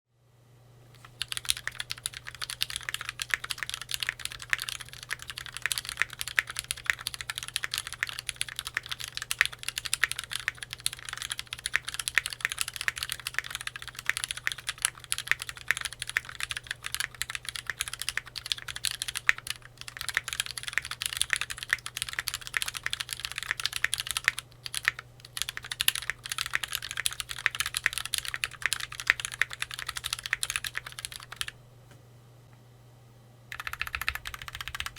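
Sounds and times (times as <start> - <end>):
mechanical keyboard typing: 1.0 - 31.6, 33.5 - 34.9.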